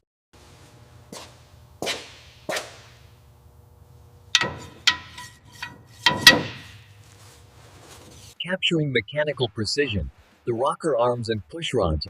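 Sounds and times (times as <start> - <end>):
metal knocks: 4.3 - 7.0.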